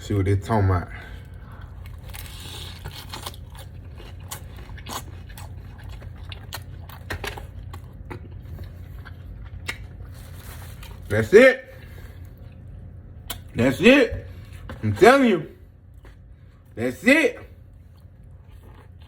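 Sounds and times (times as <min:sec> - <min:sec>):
steady low hum: 0:00.0 - 0:19.0
man chewing chicken: 0:01.1 - 0:11.1, 0:17.5 - 0:19.0.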